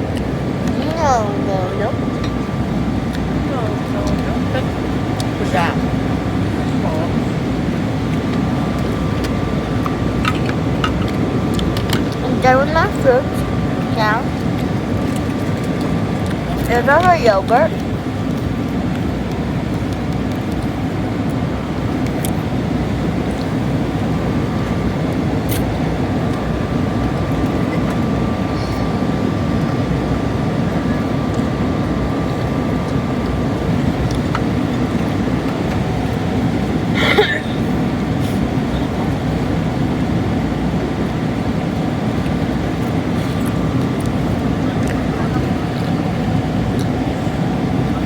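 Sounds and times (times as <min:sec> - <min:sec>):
airliner cabin rumble: 0:00.0 - 0:48.0.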